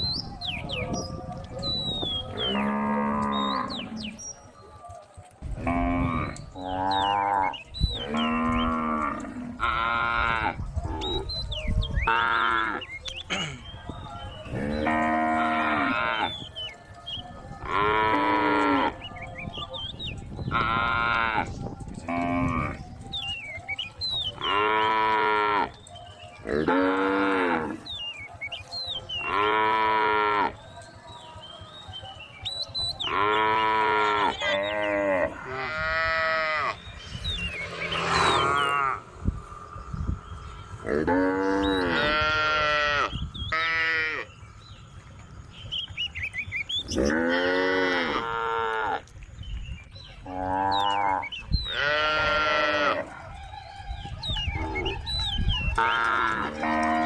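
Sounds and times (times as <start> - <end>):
cows mooing: 0.9 - 4.2, 5.4 - 11.3, 12.1 - 13.6, 14.4 - 16.5, 17.6 - 19.2, 20.5 - 23.0, 24.3 - 25.8, 26.4 - 28.0, 29.2 - 30.6, 33.0 - 39.3, 40.3 - 44.3, 46.8 - 49.2, 50.2 - 53.2, 54.5 - 57.0.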